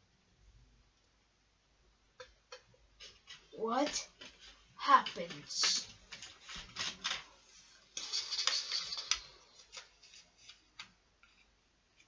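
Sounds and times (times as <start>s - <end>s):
plastic box and paper rustling: 3.0s - 11.0s.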